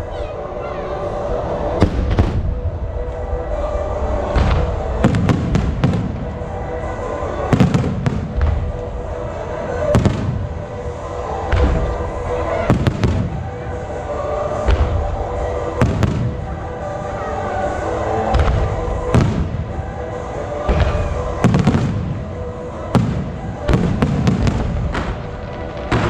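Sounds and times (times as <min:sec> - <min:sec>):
fireworks bursting: 0:04.2 - 0:17.3, 0:18.0 - 0:26.0
fireworks crackling: 0:04.2 - 0:17.3, 0:18.0 - 0:26.0.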